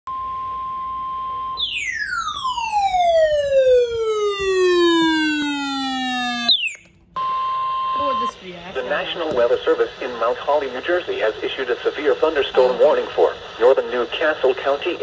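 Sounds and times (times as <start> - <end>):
short upward chirp: 1.6 - 3.2
siren-like sliding tone: 1.6 - 6.8
steady high beep: 6.5 - 8.8.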